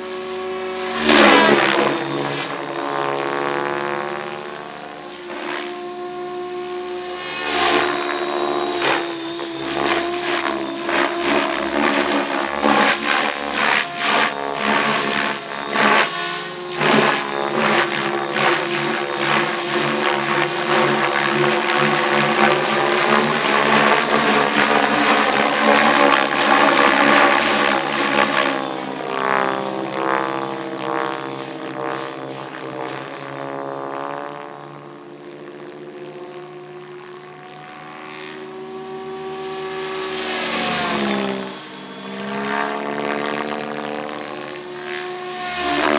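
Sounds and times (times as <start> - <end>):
helicopter rotor blades thrashing: 0.0 - 33.9
high motor whine: 0.0 - 45.9.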